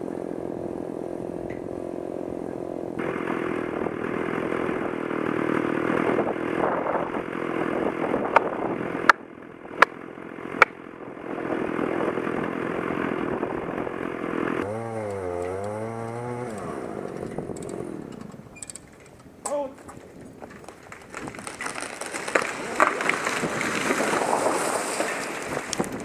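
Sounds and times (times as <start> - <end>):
chainsaw cutting: 0.0 - 18.9, 20.6 - 26.0
wood cracking: 13.9 - 26.0.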